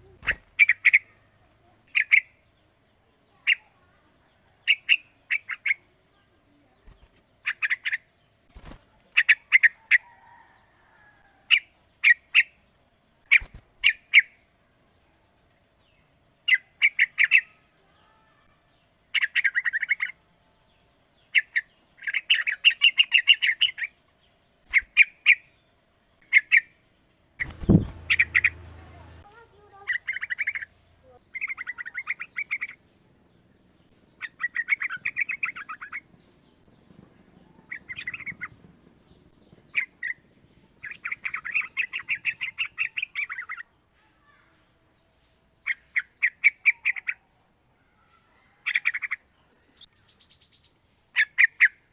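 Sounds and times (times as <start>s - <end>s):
bird calling quick notes: 27.4s - 29.2s.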